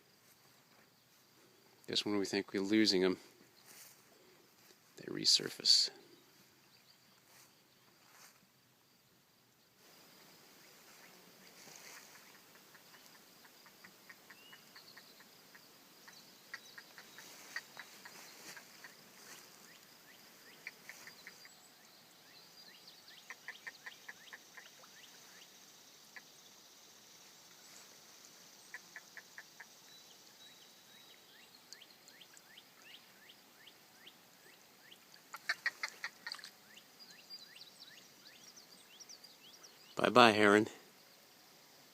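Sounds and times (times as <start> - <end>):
high insect hum: 0.0 - 41.9
small animal chirping: 35.3 - 36.5.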